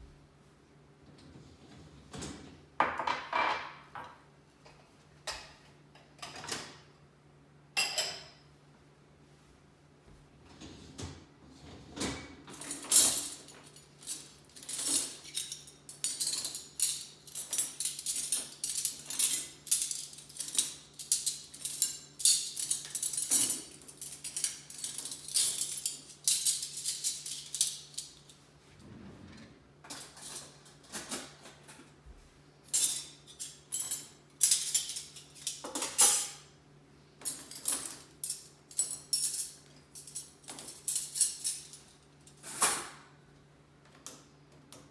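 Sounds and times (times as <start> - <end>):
dishes and cutlery clinking: 7.8 - 8.5.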